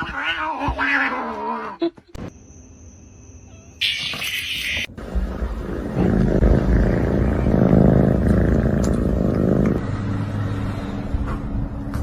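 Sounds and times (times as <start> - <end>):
cat purring: 5.6 - 9.8.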